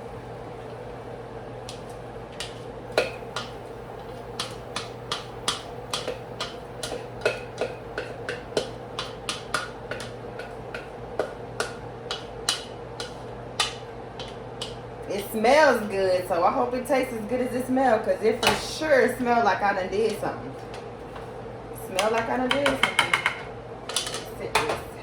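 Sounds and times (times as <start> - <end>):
steady low hum: 0.0 - 22.6
utensil tapping against a pan: 1.6 - 14.8, 22.0 - 24.7.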